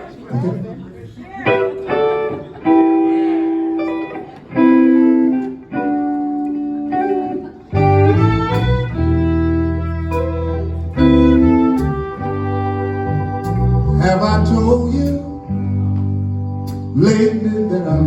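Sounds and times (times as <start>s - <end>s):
electric guitar chords: 1.4s - 18.0s
bass line: 7.7s - 18.0s.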